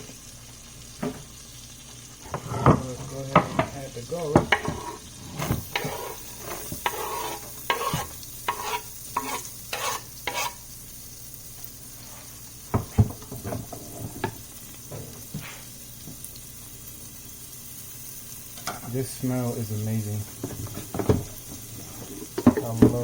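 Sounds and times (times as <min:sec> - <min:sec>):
garlic sizzling in butter: 0:00.0 - 0:23.0
utensil stirring and knocking pot: 0:02.2 - 0:10.6, 0:12.7 - 0:14.4, 0:20.3 - 0:23.0.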